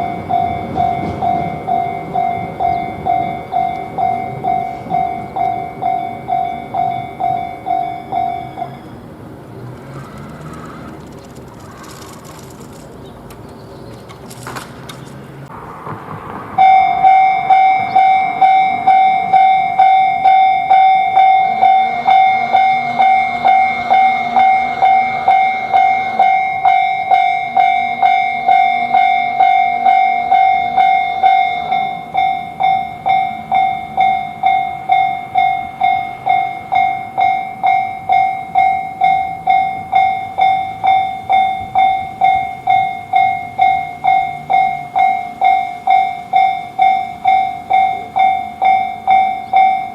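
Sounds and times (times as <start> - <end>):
level crossing warning bell: 0.0 - 11.3, 16.5 - 49.9.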